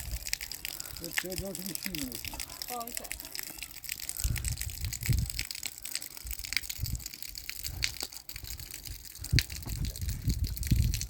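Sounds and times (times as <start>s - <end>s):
heavy rain: 0.0s - 7.0s.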